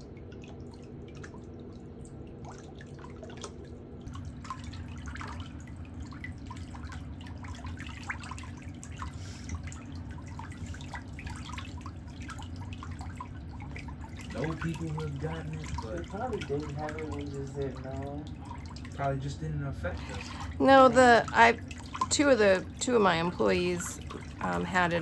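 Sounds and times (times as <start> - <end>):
low steady hum: 0.0 - 25.0
water dripping: 0.0 - 25.0.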